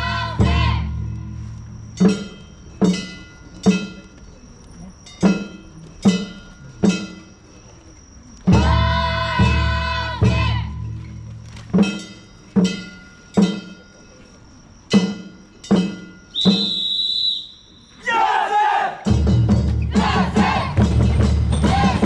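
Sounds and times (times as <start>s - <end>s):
ringing struck notes: 0.5s - 7.6s, 11.8s - 16.6s.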